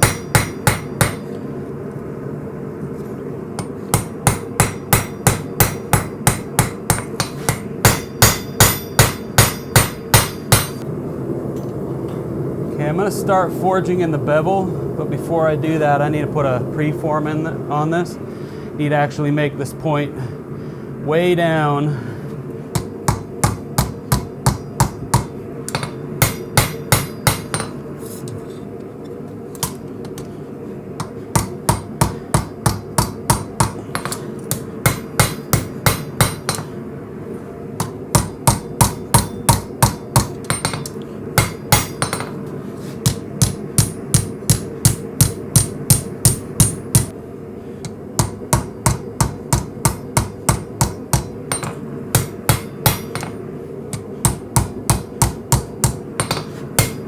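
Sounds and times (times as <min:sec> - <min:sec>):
hammer striking hot steel: 0:00.0 - 0:01.3, 0:03.6 - 0:10.8, 0:22.7 - 0:28.3, 0:29.6 - 0:30.3, 0:31.0 - 0:36.8, 0:37.8 - 0:47.2, 0:47.8 - 0:57.0
steady hum: 0:00.0 - 0:57.0.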